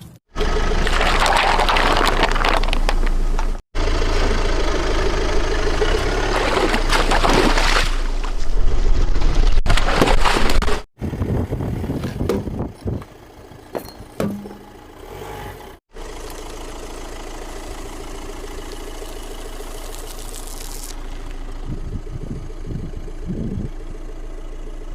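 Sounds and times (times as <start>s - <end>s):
objects crackling under tyres: 0.0s - 3.6s, 17.8s - 21.6s
car engine idling: 1.8s - 6.4s, 15.9s - 24.9s.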